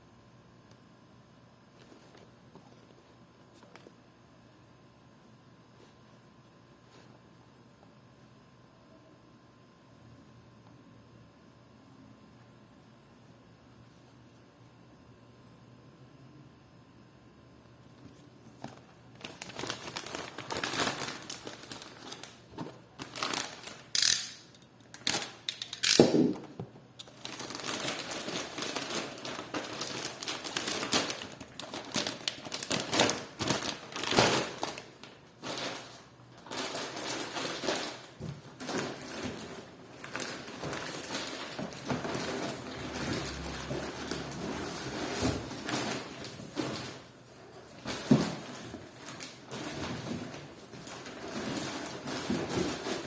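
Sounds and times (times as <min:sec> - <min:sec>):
plastic packaging crinkling: 0:18.6 - 0:26.4, 0:27.0 - 0:53.0.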